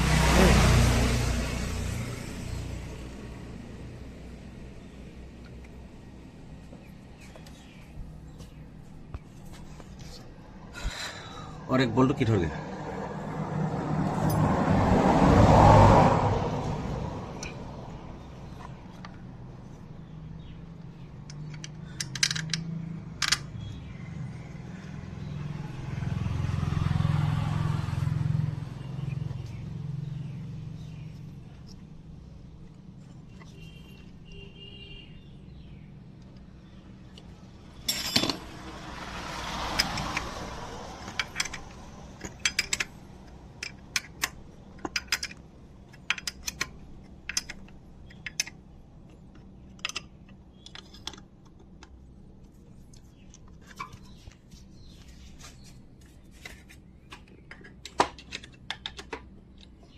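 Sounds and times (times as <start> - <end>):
motor vehicle passing: 0.0 - 5.0, 9.3 - 19.0, 21.1 - 31.9, 36.6 - 44.0.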